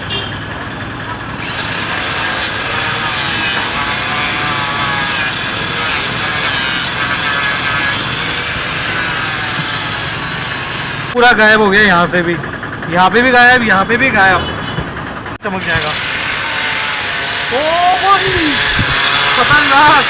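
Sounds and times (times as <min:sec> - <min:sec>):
scratchy scraping of polishing metal: 0:01.8 - 0:10.0.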